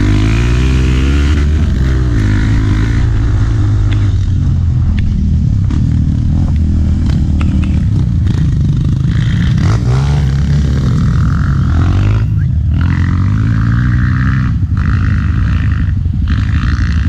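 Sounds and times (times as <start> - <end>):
motorcycle engine running: 0.0 - 17.0
bike clicks and knocks: 4.9 - 8.4.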